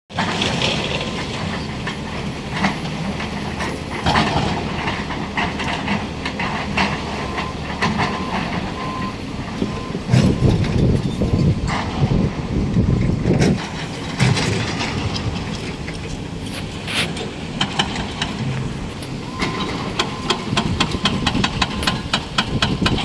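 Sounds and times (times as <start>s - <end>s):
hydraulic excavator running: 0.1s - 23.0s
debris falling: 13.3s - 18.8s.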